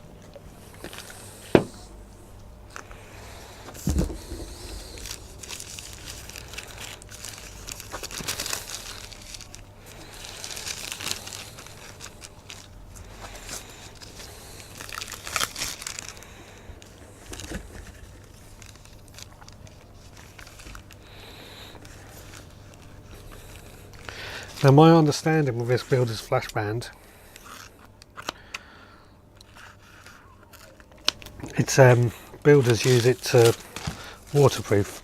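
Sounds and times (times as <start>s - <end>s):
dull thump: 1.5s - 1.8s, 3.8s - 5.6s
plastic wrapping crinkling: 3.6s - 26.6s, 29.5s - 35.0s
tape tearing crackles: 3.8s - 16.3s, 17.1s - 21.2s, 32.5s - 35.0s.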